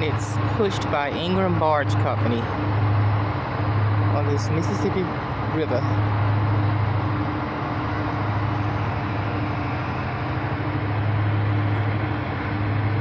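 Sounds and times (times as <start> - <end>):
boat diesel engines droning: 0.0 - 13.0.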